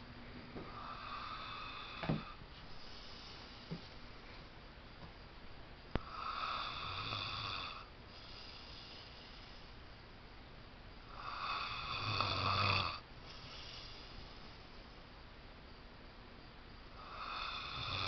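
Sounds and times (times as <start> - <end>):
quiet breath: 0.0 - 4.6, 5.9 - 10.0, 11.0 - 15.0
person snoring loudly: 0.7 - 2.4, 6.0 - 8.4, 11.1 - 13.9, 17.0 - 18.0.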